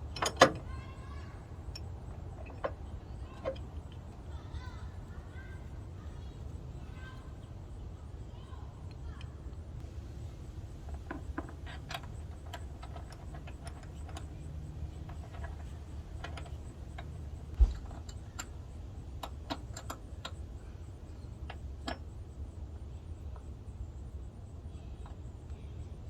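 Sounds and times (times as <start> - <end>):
low steady rumble: 0.0 - 26.0
wrench and bolts clicking: 10.9 - 20.4
dull thump: 17.6 - 18.0.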